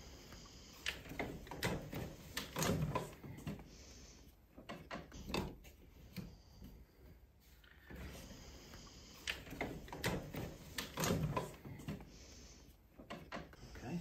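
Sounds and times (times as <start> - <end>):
hard parts clicking and rattling: 9.2 - 12.1.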